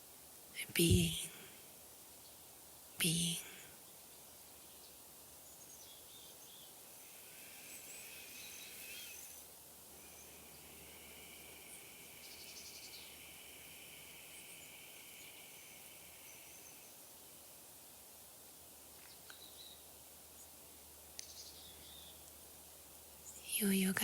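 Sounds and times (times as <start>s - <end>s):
soft background hiss: 0.0s - 24.0s
high insect trill: 6.9s - 17.1s.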